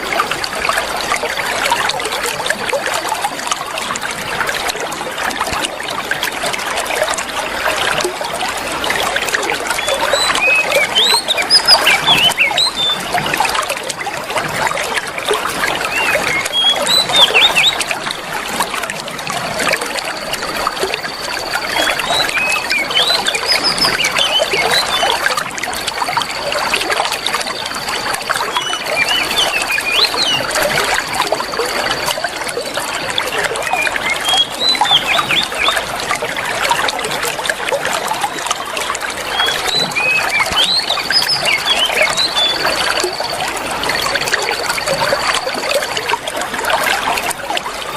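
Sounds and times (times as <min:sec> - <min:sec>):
water trickling: 0:00.0 - 0:47.9
small birds chirping: 0:09.7 - 0:13.1, 0:15.8 - 0:18.1, 0:21.0 - 0:25.3, 0:27.1 - 0:30.8, 0:33.3 - 0:35.8, 0:39.3 - 0:45.4.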